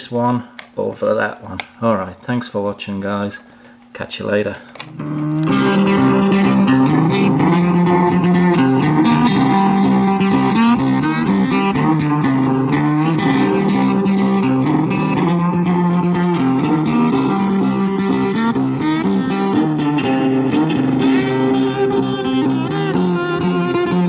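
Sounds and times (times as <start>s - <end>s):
guitar-led background music: 4.8s - 24.0s.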